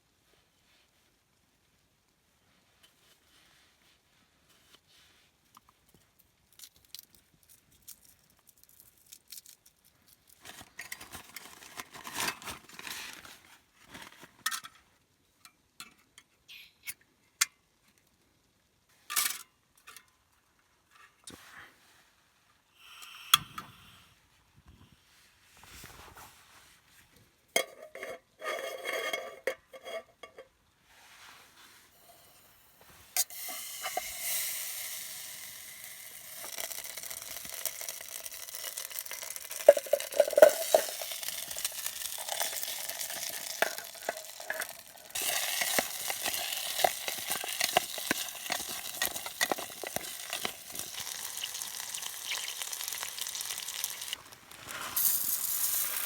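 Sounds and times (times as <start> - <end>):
food sizzling in a pan: 31.9 - 56.0
utensils clinking: 33.2 - 56.0
cookware knocking and scraping: 39.6 - 52.6.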